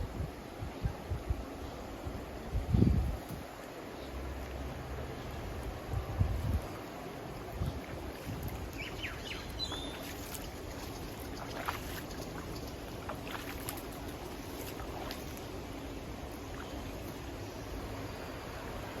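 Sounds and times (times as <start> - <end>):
wind: 0.0 - 19.0
river water rushing: 6.7 - 19.0.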